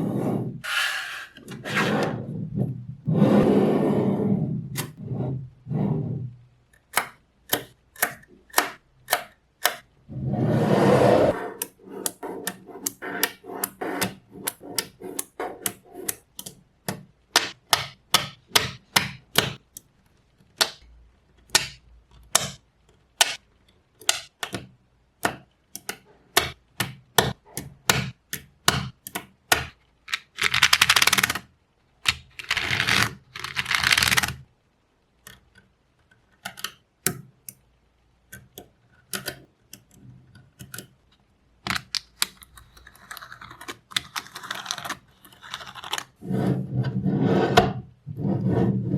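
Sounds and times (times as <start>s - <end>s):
magnetic balls snapping together: 6.8s - 9.9s.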